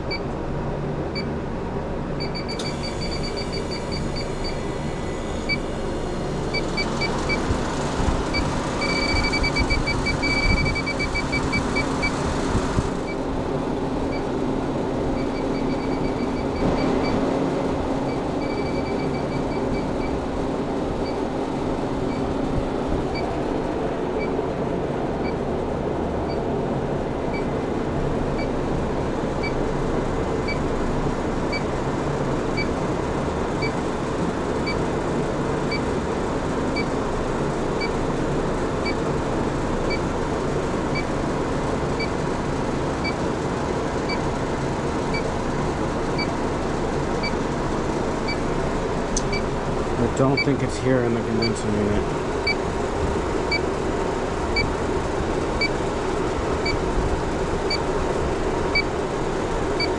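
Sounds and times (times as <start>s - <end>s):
condensing unit mechanical hum: 0.0s - 59.9s
leak detector ticking pips: 8.3s - 12.2s.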